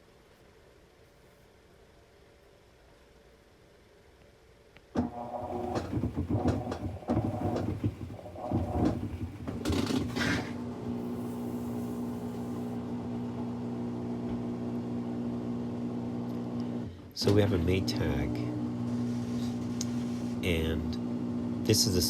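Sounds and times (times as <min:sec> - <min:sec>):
washing machine humming: 0:04.9 - 0:22.0
washer knocking and clattering: 0:05.0 - 0:12.5.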